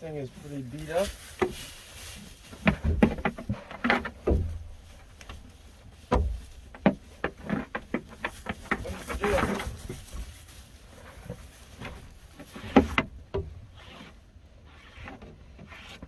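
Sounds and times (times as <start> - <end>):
dull thuds: 0.6 - 13.8
knocks and clatters: 0.8 - 13.6.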